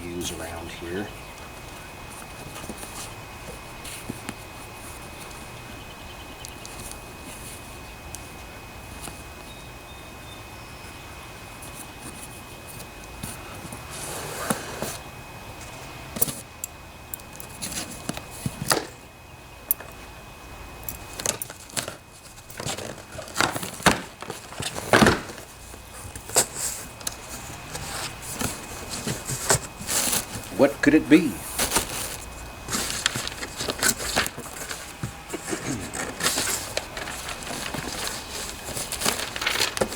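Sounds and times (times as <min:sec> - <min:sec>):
cardboard flaps rustling: 0:21.1 - 0:30.6, 0:31.4 - 0:39.9.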